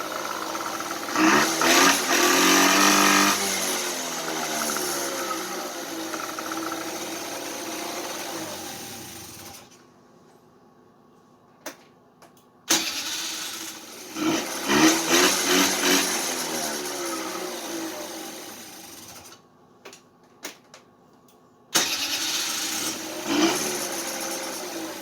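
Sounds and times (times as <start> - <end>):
scooter engine running: 0.0 - 9.7, 12.8 - 19.3, 21.8 - 25.0.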